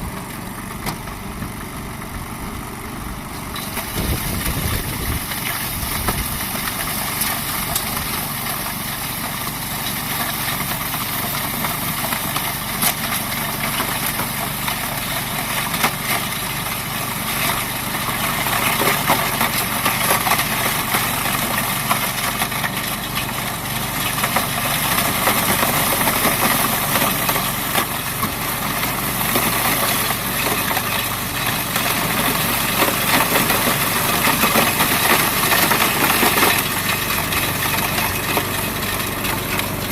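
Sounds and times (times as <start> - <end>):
snowblower engine running: 0.0 - 39.9.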